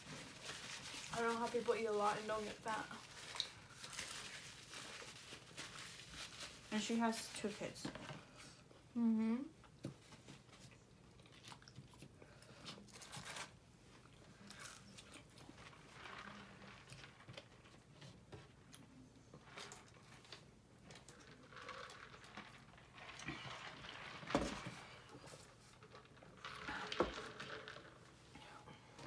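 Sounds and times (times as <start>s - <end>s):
soft rustles: 0.0s - 8.4s
chewing: 10.8s - 12.9s.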